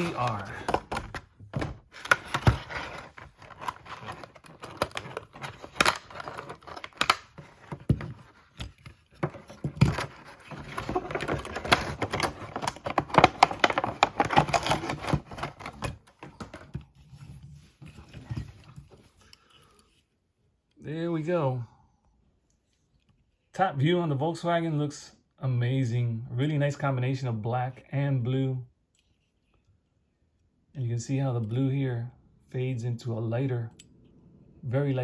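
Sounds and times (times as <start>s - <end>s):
plastic packaging crinkling: 0.0s - 1.2s, 9.8s - 15.8s.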